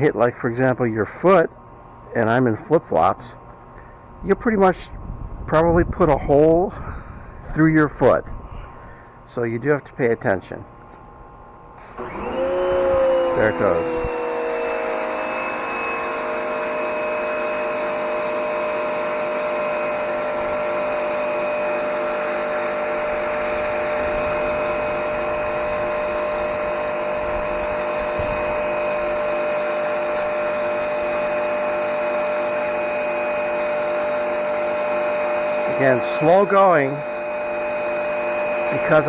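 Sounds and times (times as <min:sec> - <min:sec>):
pressure washer motor whining: 0:00.0 - 0:39.0
water jet hissing on concrete: 0:22.3 - 0:39.0.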